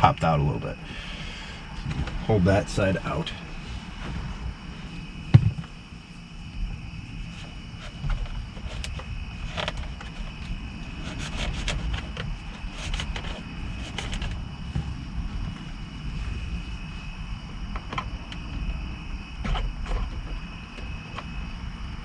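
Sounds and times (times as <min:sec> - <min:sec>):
low rumble: 0:03.5 - 0:07.8.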